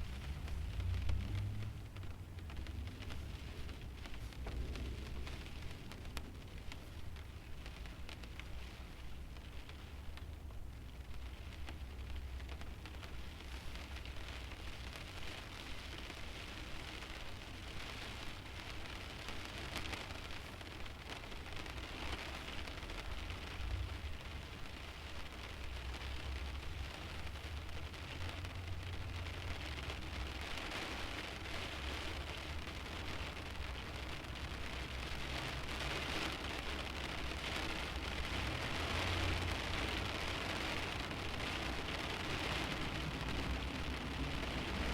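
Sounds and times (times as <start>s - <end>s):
low rumble: 0.0s - 15.0s
rain on car windshield: 0.0s - 44.9s.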